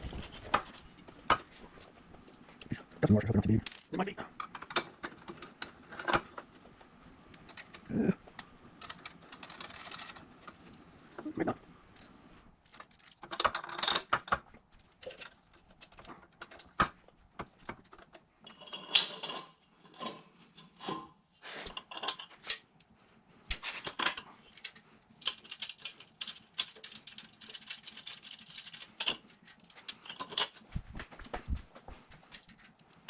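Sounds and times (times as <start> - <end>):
hand tools and metal parts clinking: 3.6 - 6.2, 11.9 - 16.8, 17.8 - 22.9, 23.6 - 30.6.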